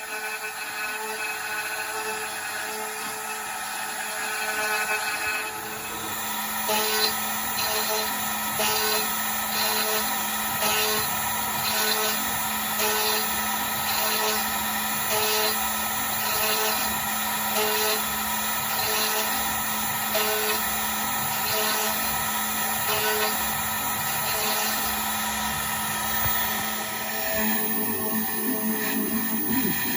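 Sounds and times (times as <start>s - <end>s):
router cutting wood: 0.0s - 29.9s
router spindle humming and whining: 0.0s - 29.9s.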